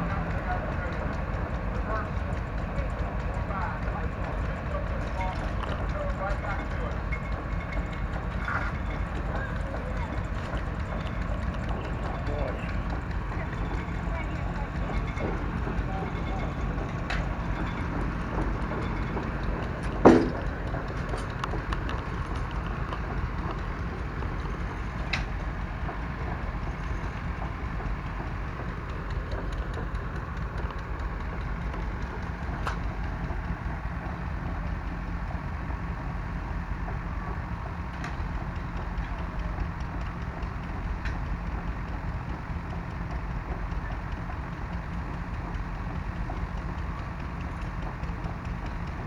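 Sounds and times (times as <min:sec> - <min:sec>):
engine idling: 0:00.0 - 0:49.0
sharp loud knock: 0:20.0 - 0:20.5.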